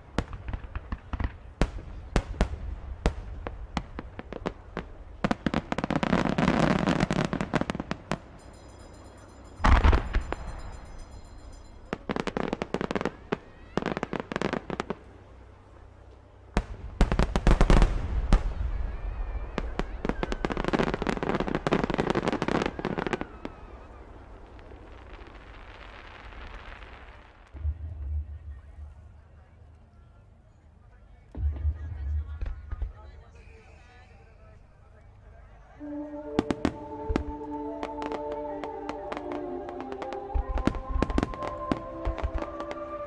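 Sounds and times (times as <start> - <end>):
fireworks deep booms: 0.0 - 8.2, 16.5 - 26.8, 27.4 - 29.4, 31.3 - 33.6
fireworks crackling: 0.0 - 29.5, 36.3 - 43.0.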